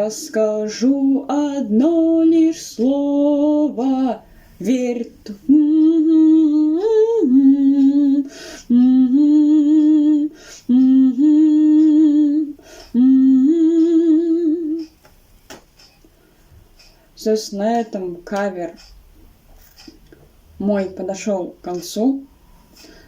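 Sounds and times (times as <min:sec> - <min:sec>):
woman humming: 0:02.0 - 0:15.0.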